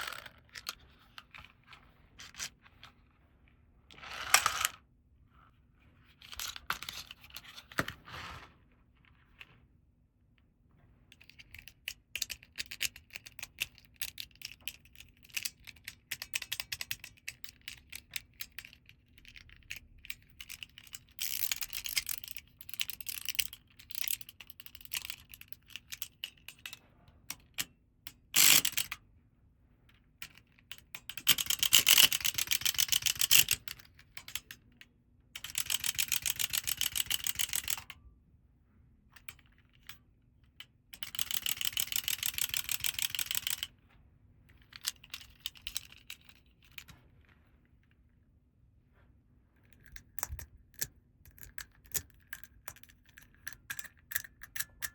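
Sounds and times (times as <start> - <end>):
plastic toys clicking: 30.3 - 34.6, 35.4 - 38.0, 41.0 - 43.7, 44.6 - 46.9, 49.8 - 54.9.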